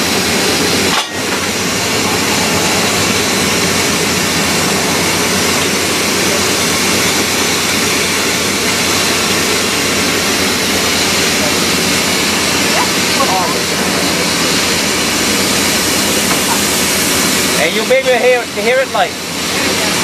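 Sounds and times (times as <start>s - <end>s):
steam locomotive hissing: 0.0s - 20.0s.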